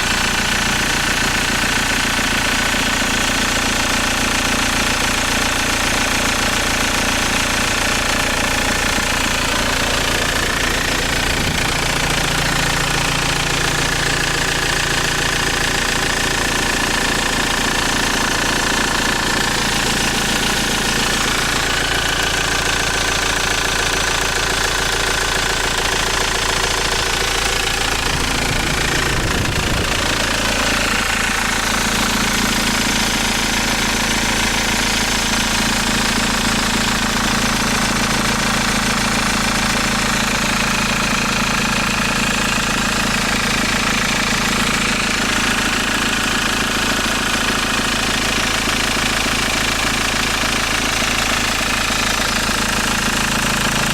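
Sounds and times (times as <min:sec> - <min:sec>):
engine idling with a knock: 0:00.0 - 0:53.9.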